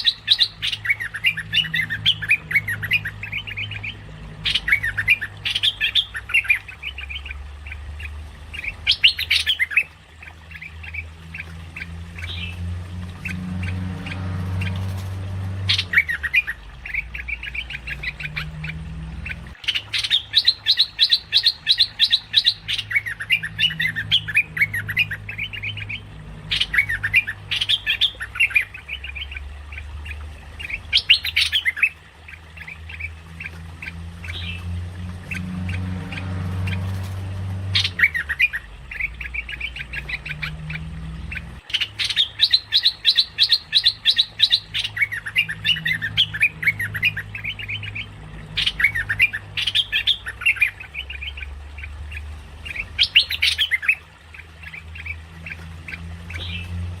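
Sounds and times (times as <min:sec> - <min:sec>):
bird chattering calls: 0:00.0 - 0:12.6, 0:35.2 - 0:51.9.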